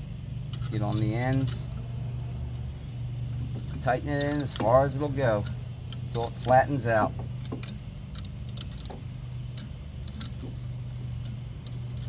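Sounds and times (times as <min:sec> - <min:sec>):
low hum: 0:00.0 - 0:12.0
wrench clicking: 0:00.5 - 0:01.8, 0:03.5 - 0:12.0.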